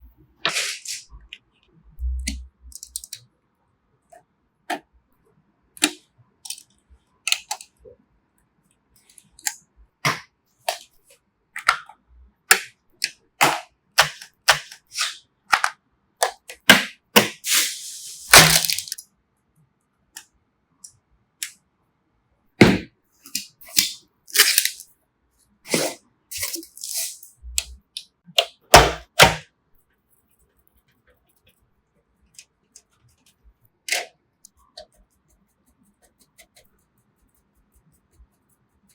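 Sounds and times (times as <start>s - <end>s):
rustling scrape: 0.4s - 1.1s.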